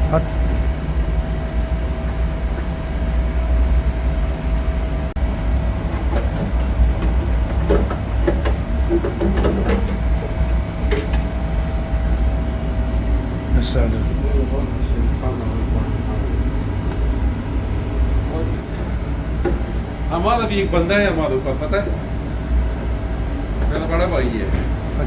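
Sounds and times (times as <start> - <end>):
low mechanical rumble: 0.0 - 25.0.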